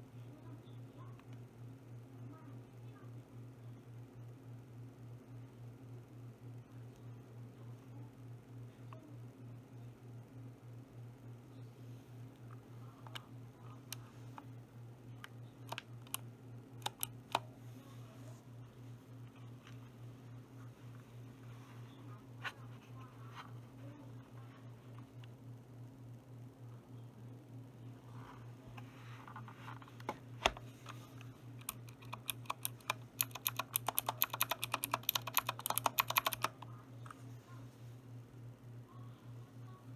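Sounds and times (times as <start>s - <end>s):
steady low hum: 0.0s - 39.9s
mechanical keyboard key clacks: 16.8s - 17.1s, 31.6s - 36.6s.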